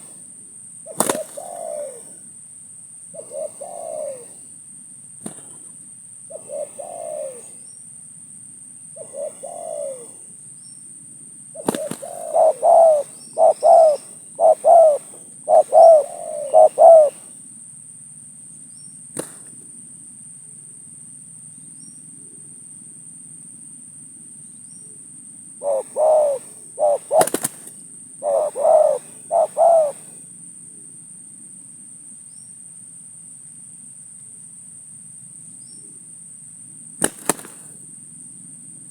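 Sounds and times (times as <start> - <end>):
doves cooing: 0.9 - 2.3, 3.2 - 4.6, 5.2 - 7.8, 9.0 - 10.4, 11.5 - 17.4, 25.6 - 30.3.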